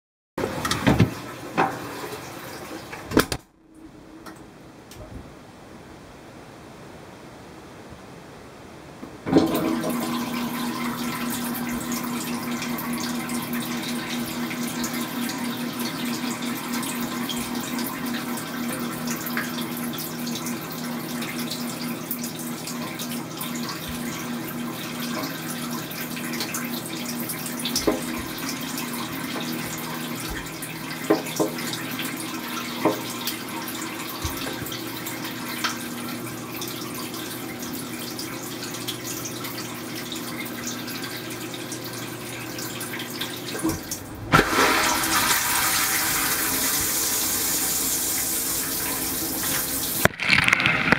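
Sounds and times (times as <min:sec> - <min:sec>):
dishwasher pump humming: 0:00.4 - 0:03.4, 0:09.3 - 0:50.9
water spraying against tub: 0:09.3 - 0:36.1, 0:43.0 - 0:50.9.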